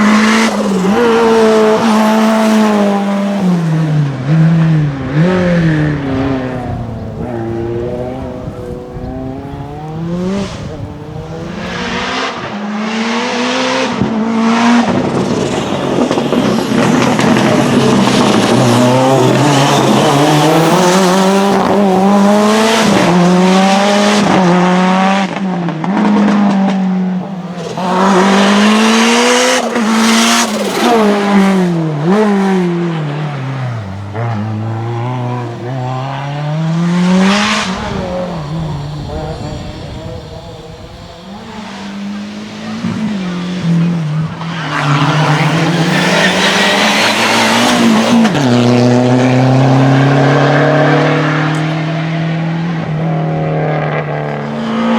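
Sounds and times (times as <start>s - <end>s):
race car engine revving: 0.0s - 54.9s.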